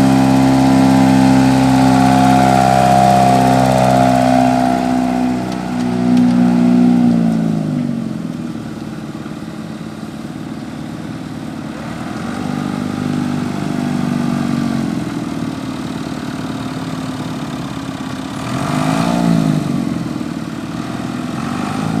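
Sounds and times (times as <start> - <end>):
tractor diesel engine revving: 0.0 - 9.1.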